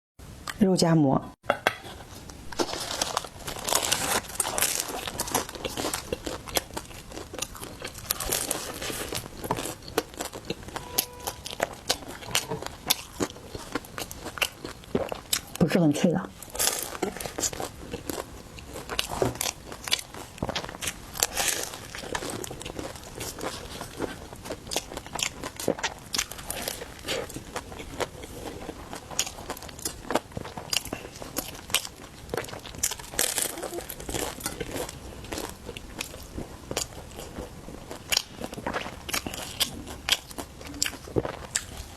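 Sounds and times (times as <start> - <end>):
biting and chewing bread: 2.5 - 15.6, 16.4 - 41.9
food wrapper crinkling: 2.5 - 15.6, 16.4 - 41.9
flatbread crackling as torn: 2.6 - 15.4.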